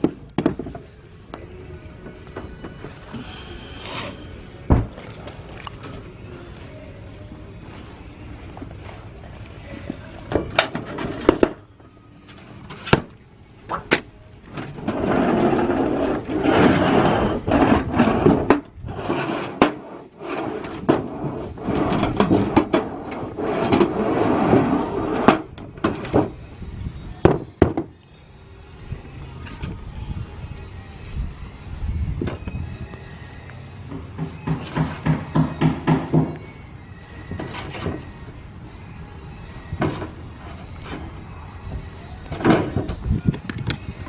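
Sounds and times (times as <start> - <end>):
sheet metal rattling and scraping: 10.3 - 11.6, 12.3 - 26.4, 42.3 - 43.8.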